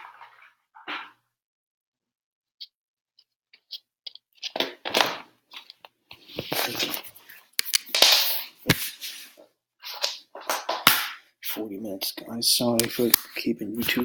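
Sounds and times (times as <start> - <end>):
clicks and knocks of objects: 3.6 - 8.8.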